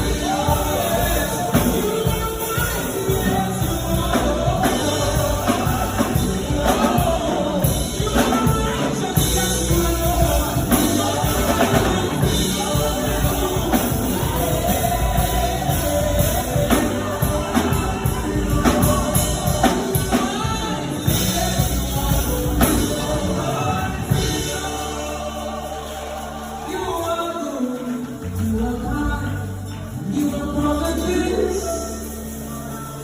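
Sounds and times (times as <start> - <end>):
drums and percussion: 0.0 - 33.0
gospel singing: 0.0 - 33.0.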